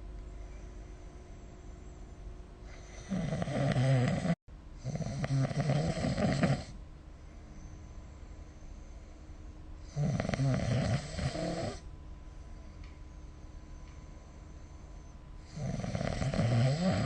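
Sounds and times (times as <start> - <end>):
person snoring: 2.7 - 6.8, 9.8 - 11.8, 15.4 - 17.0.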